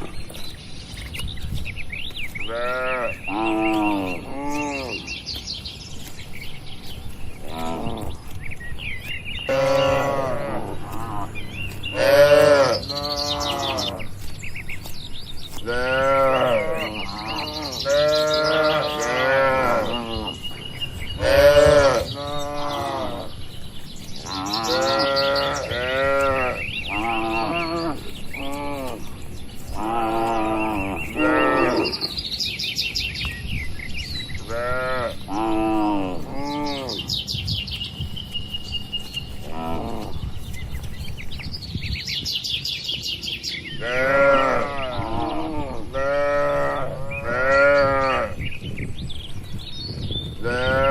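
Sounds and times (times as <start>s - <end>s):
cattle mooing: 7.4s - 8.2s, 9.5s - 14.2s, 15.6s - 20.5s, 21.2s - 23.4s, 24.2s - 29.1s, 29.7s - 32.1s, 39.4s - 40.2s, 43.8s - 48.4s.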